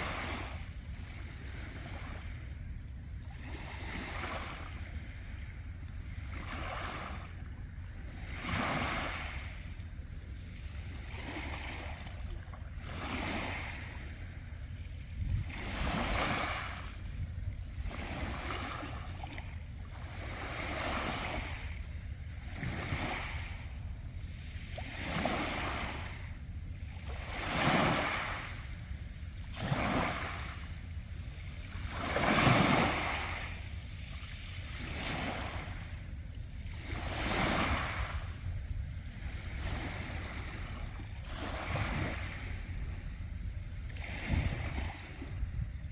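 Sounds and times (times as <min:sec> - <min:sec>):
waves over pebble beach: 0:08.2 - 0:09.6, 0:12.8 - 0:14.0, 0:15.5 - 0:16.9, 0:20.0 - 0:21.8, 0:22.5 - 0:23.6, 0:24.4 - 0:26.3, 0:27.0 - 0:28.7, 0:29.5 - 0:30.7, 0:31.5 - 0:36.0, 0:36.7 - 0:38.4, 0:39.2 - 0:42.6.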